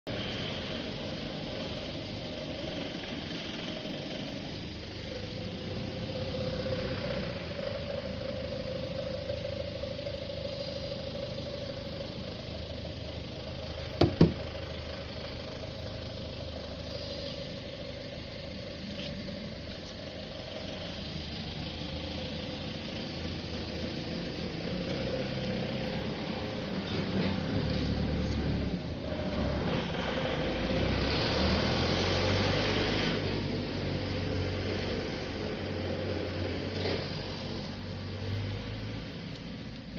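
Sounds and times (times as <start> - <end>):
car wash motor hum: 0.1 - 39.9
sharp knocks: 14.0 - 14.5.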